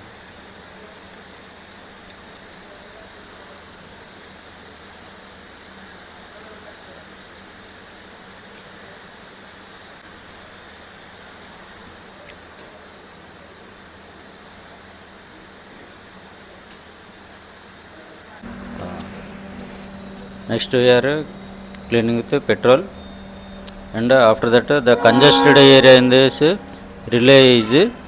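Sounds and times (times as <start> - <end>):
low mains hum: 18.2 - 28.0
background hiss: 18.4 - 28.0.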